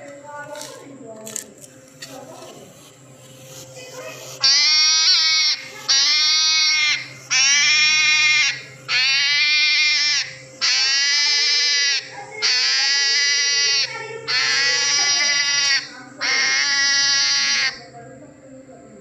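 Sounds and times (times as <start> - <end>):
hedgehog screaming: 4.0 - 17.9.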